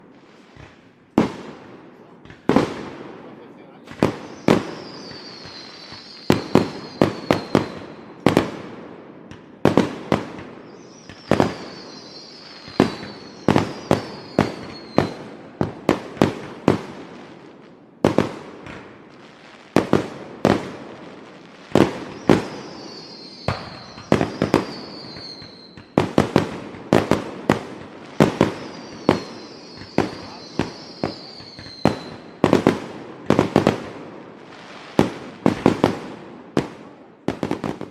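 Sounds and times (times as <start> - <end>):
fireworks bangs: 0.0 - 37.9
high descending firework whistle: 4.1 - 8.1, 10.6 - 15.2, 22.0 - 26.0, 28.2 - 32.5.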